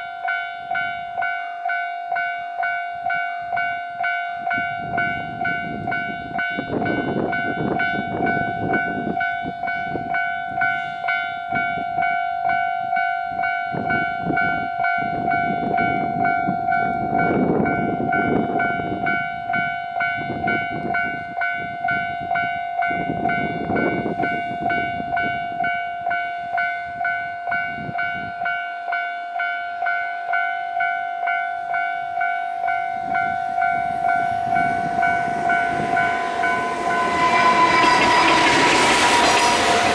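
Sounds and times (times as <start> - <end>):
level crossing warning bell: 0.0 - 39.9
rushing noise: 32.6 - 39.9.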